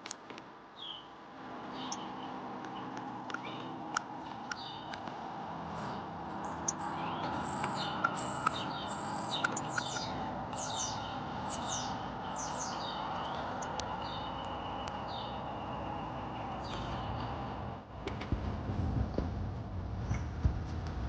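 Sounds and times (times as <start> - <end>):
small birds chirping: 0.7 - 17.7
sharp clicks: 6.4 - 10.7.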